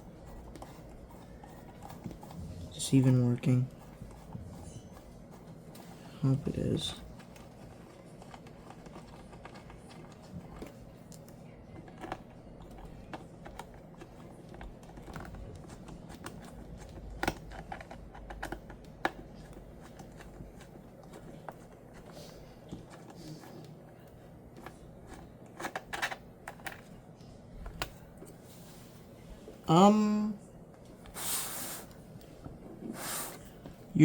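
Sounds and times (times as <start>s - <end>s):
screwdriver clicking and tapping screws: 11.8s - 22.1s.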